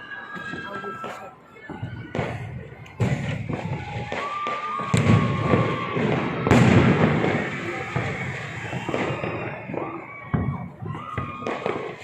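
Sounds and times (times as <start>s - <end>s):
high steady whistle: 0.0s - 1.4s
fireworks crackling bangs: 0.0s - 12.0s
heavy firework booms: 1.8s - 12.0s.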